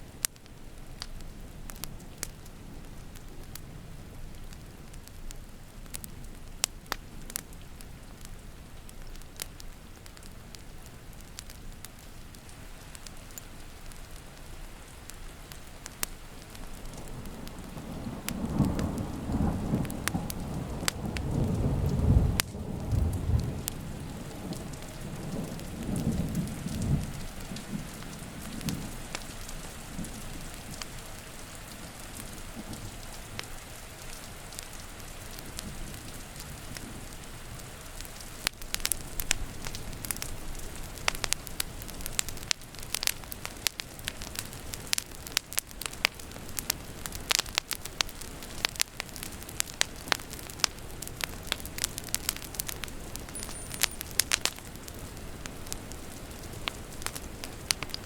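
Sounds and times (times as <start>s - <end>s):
steady rain: 0.0s - 58.0s
wood fire crackling: 0.0s - 58.0s
thunder rumbling: 16.8s - 29.0s.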